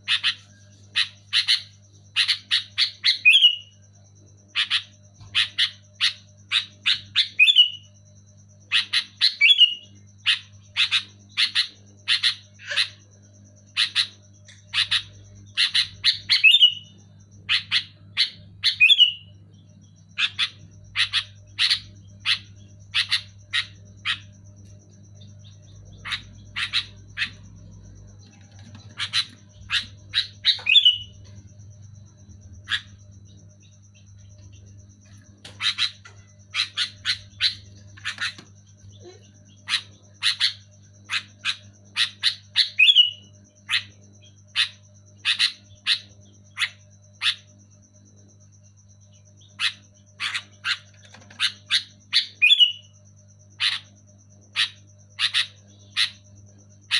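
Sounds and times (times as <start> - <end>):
bulbul calling: 0.0 - 3.9, 4.5 - 7.9, 8.7 - 47.5, 49.0 - 56.9.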